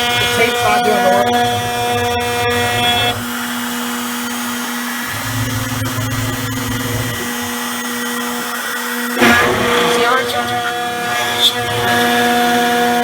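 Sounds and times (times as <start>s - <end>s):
router spindle whine: 0.0s - 13.0s
low hum: 5.1s - 8.6s.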